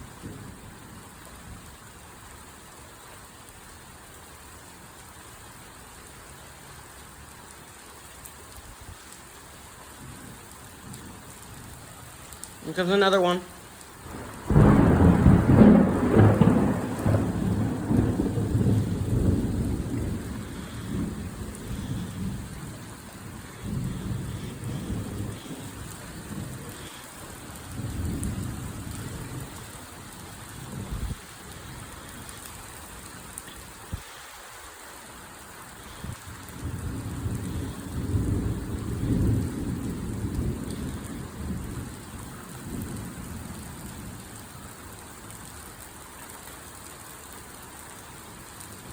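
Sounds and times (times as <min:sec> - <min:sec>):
thunder rumbling: 0:00.0 - 0:01.7, 0:14.0 - 0:34.2, 0:35.8 - 0:44.4
torrential rain: 0:00.0 - 0:48.9.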